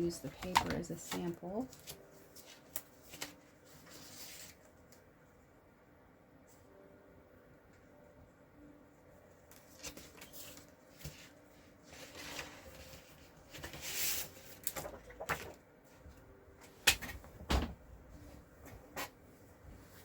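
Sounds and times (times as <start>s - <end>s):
paper rustling: 0.3s - 5.0s, 9.5s - 15.6s.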